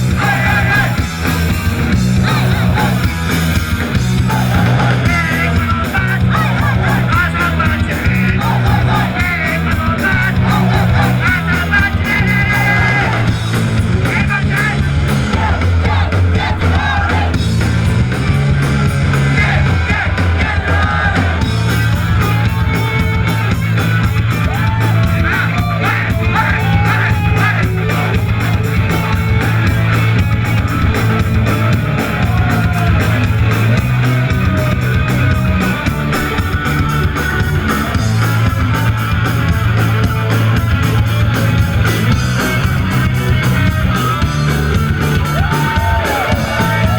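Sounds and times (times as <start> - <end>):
shouted vocals: 0.0 - 1.3, 1.9 - 3.2, 3.9 - 17.5, 19.0 - 36.2, 44.9 - 46.9
punk rock band playing: 0.0 - 46.9.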